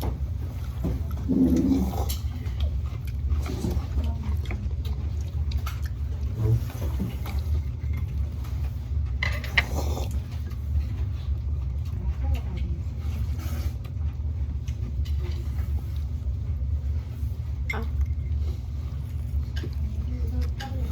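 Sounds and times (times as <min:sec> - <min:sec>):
chewing mouth noises: 0:00.5 - 0:12.0, 0:17.6 - 0:20.9.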